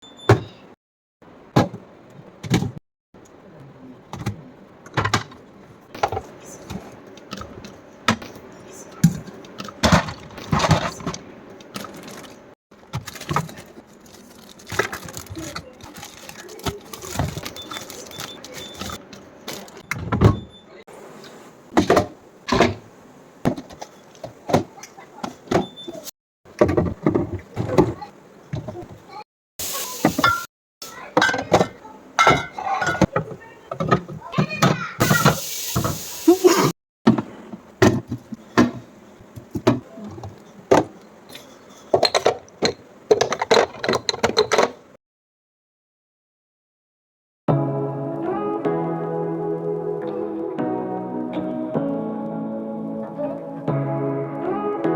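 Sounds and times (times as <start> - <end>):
food containers knocking and clunking: 1.5 - 2.8, 4.1 - 8.4, 9.0 - 12.2, 12.8 - 20.5, 21.7 - 29.1, 31.1 - 35.9, 37.1 - 41.0, 41.8 - 45.0.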